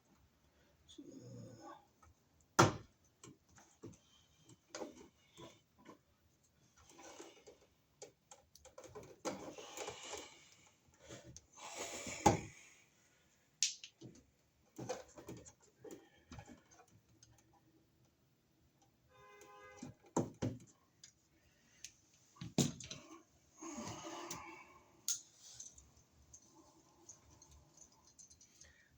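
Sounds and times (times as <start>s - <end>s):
tools clicking and scraping wires: 3.2s - 11.5s, 23.8s - 28.9s.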